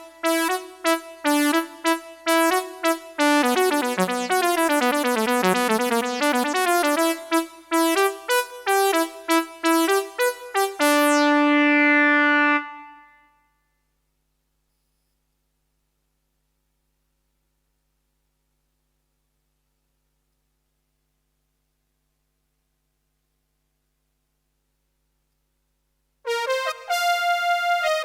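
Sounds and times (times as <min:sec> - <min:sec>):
synthesizer piano notes: 0:00.0 - 0:13.3, 0:26.3 - 0:28.0.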